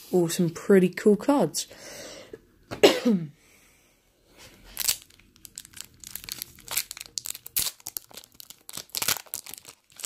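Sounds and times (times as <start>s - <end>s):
wrapper crinkling: 4.6s - 10.0s
wrapper ripping: 4.7s - 10.0s.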